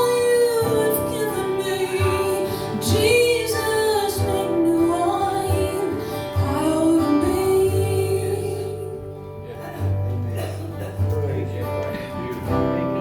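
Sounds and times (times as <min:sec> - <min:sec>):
woman singing: 0:00.0 - 0:09.5
acoustic guitar: 0:00.0 - 0:13.0.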